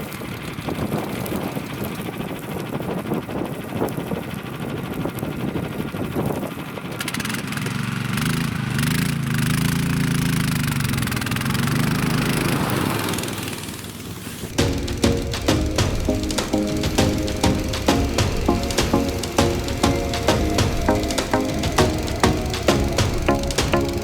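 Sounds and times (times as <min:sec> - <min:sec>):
engine running: 0:07.0 - 0:24.0.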